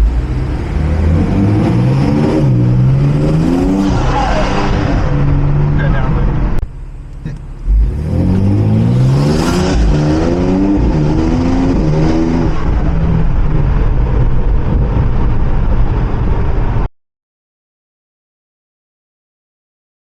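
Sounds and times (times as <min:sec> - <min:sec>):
car engine accelerating: 0:00.0 - 0:16.9.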